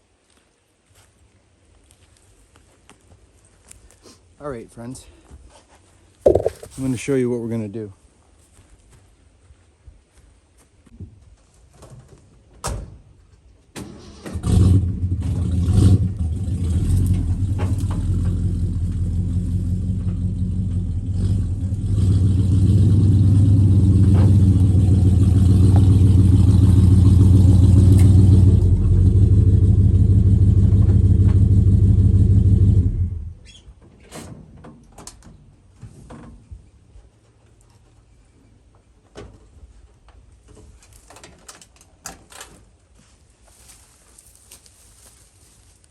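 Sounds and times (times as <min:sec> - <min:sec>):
vehicle engine running: 0:14.4 - 0:33.4.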